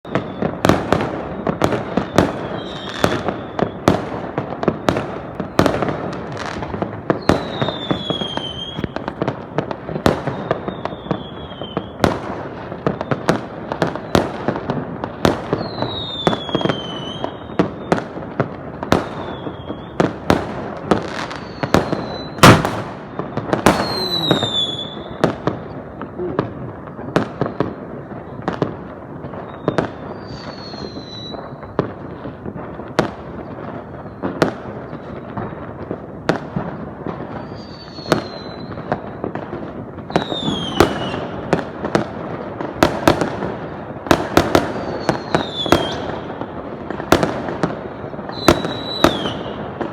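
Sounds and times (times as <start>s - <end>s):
firework whistles falling in pitch: 0.0s - 4.0s, 6.4s - 9.0s, 10.0s - 12.0s, 12.9s - 14.3s, 15.5s - 18.1s, 19.0s - 20.2s, 21.0s - 25.3s, 29.4s - 31.7s, 37.3s - 39.0s, 40.1s - 41.2s, 44.7s - 46.3s, 48.3s - 49.6s
fireworks bangs: 0.0s - 49.9s.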